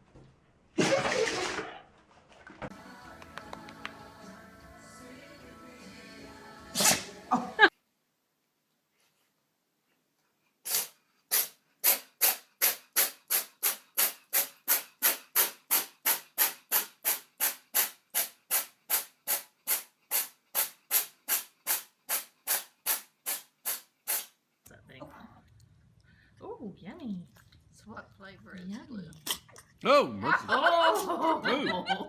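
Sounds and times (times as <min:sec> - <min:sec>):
pet breathing in hissing puffs: 0:10.6 - 0:24.4.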